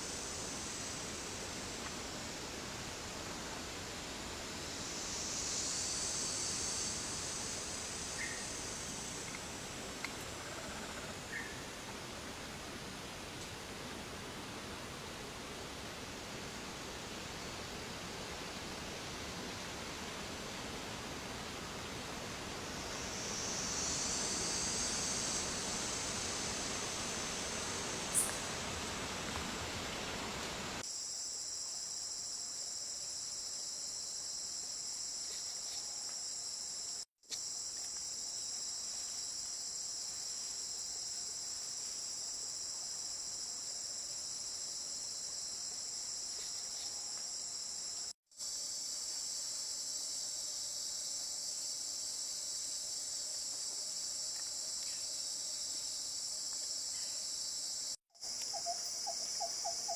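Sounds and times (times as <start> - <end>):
high-pitched insect chorus: 0.0 - 11.9, 19.8 - 59.9.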